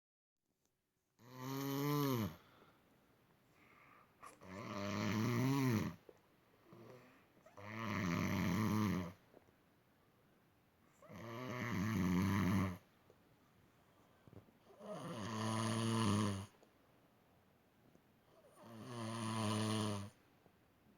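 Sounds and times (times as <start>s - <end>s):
person snoring loudly: 1.2s - 2.4s, 4.4s - 6.0s, 7.6s - 9.2s, 11.1s - 12.8s, 14.8s - 16.5s, 18.6s - 20.2s.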